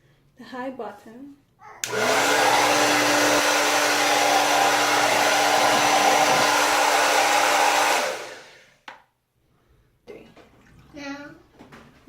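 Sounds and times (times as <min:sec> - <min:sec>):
hair dryer running: 0:01.8 - 0:08.9.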